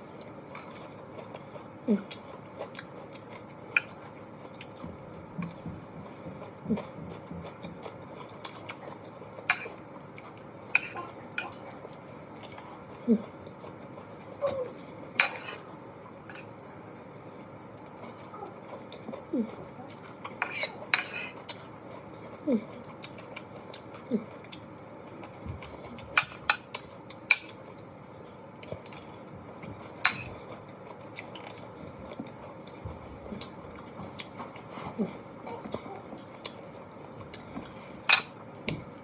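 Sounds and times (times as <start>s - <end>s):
cutlery clinking on a plate: 9.5s - 9.8s, 15.2s - 15.6s, 16.3s - 16.5s, 20.4s - 21.4s, 30.0s - 30.3s, 38.1s - 38.3s.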